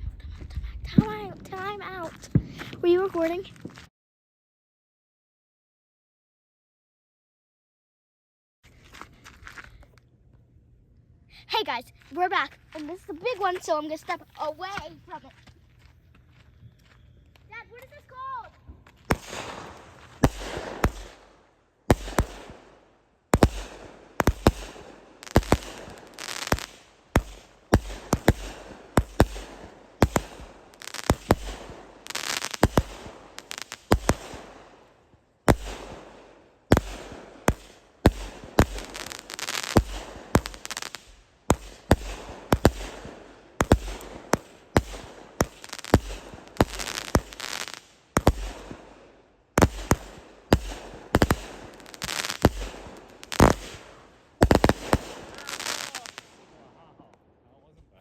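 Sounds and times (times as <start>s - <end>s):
firework bangs: 0.9s - 3.3s, 19.0s - 56.7s
firework crackling and hiss: 19.1s - 56.6s.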